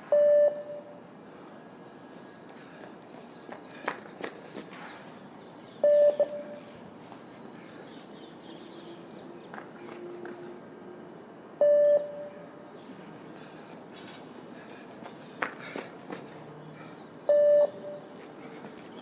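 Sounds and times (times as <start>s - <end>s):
high beep signal: 0.0s - 0.9s, 5.8s - 6.6s, 11.6s - 12.4s, 17.3s - 18.0s.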